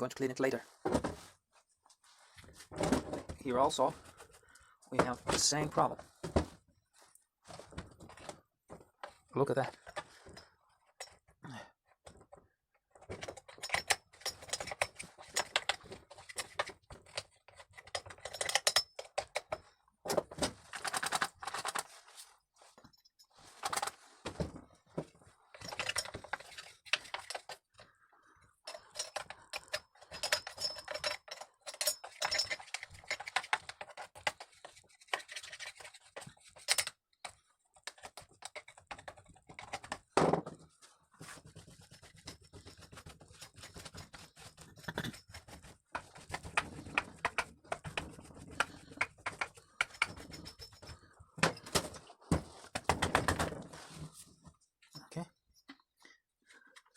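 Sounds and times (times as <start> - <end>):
brush scrubbing metal parts: 28.8 - 36.9, 41.2 - 51.2.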